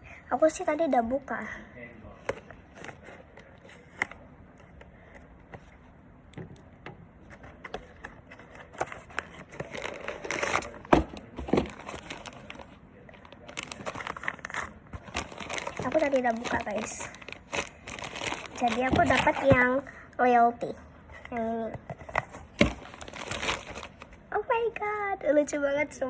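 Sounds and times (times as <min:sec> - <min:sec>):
packaging crinkling and rustling: 0:07.3 - 0:19.8, 0:22.0 - 0:24.2.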